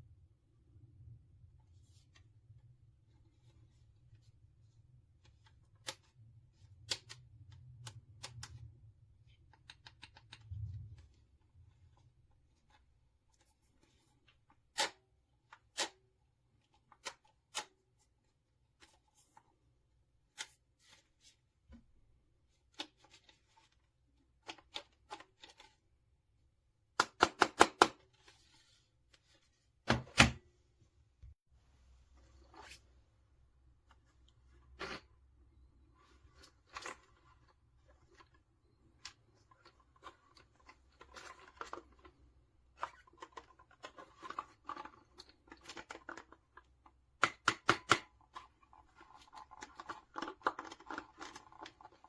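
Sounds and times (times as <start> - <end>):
small plastic parts clicking: 36.4 - 52.0.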